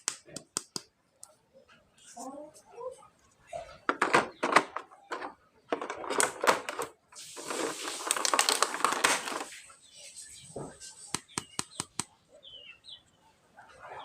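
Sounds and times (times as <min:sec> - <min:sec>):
plastic toys clicking and rattling: 0:03.8 - 0:09.6
packaging crinkling: 0:06.0 - 0:09.7.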